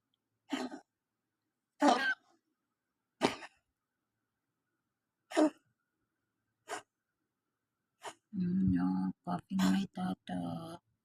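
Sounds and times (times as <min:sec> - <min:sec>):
cat coughing: 0:03.2 - 0:03.6.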